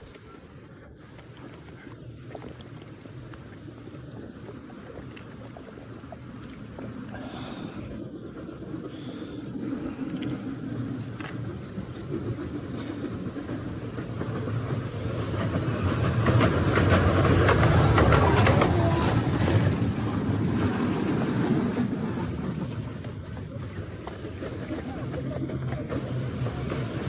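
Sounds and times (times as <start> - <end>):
small rail car rolling on track: 7.0 - 27.0
thin high squeal: 8.0 - 19.6.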